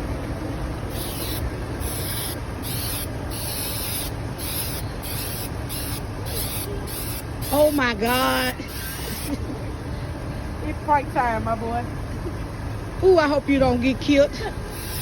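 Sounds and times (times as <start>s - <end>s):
aerosol can spraying: 0.9s - 9.4s, 14.7s - 15.0s.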